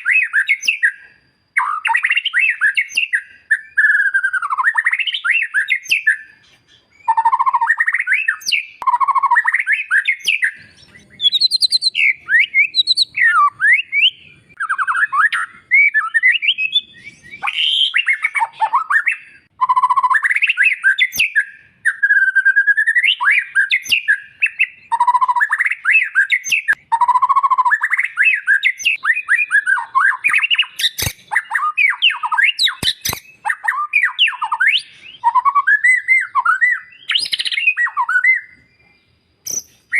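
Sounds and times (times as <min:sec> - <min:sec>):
bird singing whistled phrases: 0:00.0 - 0:39.9
sharp clicks: 0:32.7 - 0:33.3.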